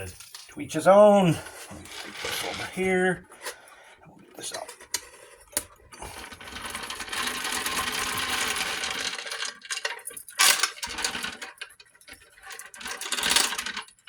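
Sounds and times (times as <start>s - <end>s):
metal parts rattling and clinking: 6.2s - 14.0s.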